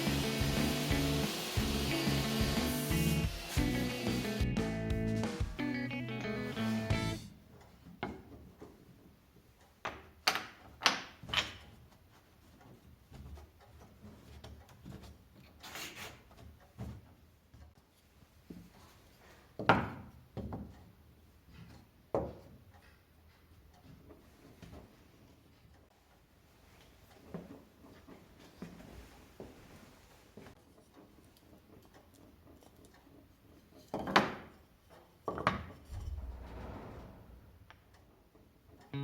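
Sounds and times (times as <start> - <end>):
wooden parts knocking: 33.9 - 34.6
wood scraping slide: 35.8 - 37.9.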